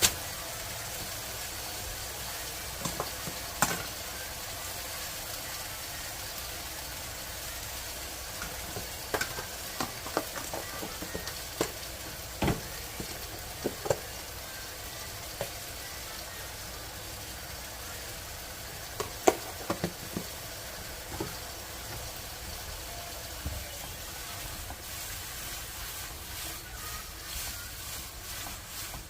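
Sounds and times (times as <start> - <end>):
zucchini sizzling in a pan: 0.0 - 29.0.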